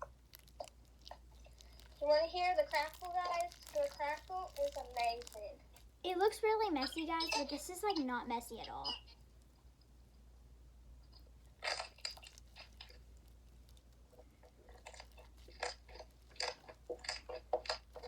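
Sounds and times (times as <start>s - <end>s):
slime crackling pops: 0.0s - 5.9s.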